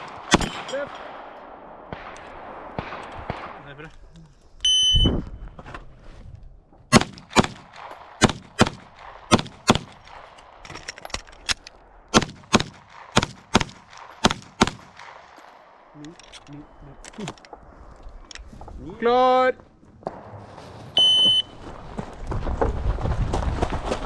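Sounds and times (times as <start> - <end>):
short high beep: 4.6 - 5.2, 21.0 - 21.5
pistol shots: 6.9 - 10.2, 12.1 - 15.4.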